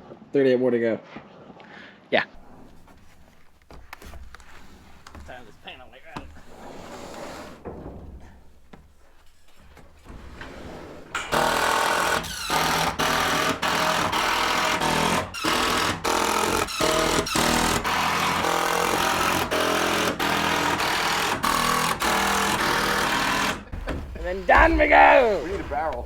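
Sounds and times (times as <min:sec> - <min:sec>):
power screwdriver bursts: 0:11.2 - 0:24.2.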